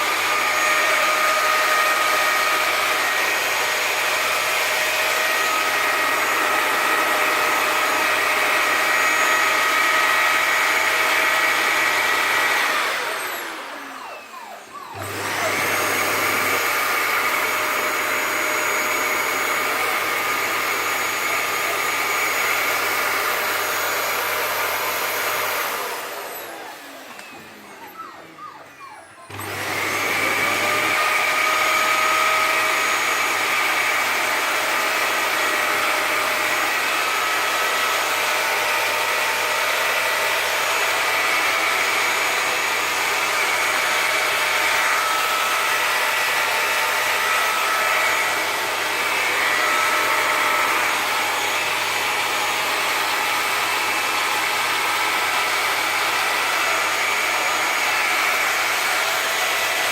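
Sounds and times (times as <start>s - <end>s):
vacuum cleaner running: 0.0s - 59.9s
motor winding down whine: 25.8s - 31.0s.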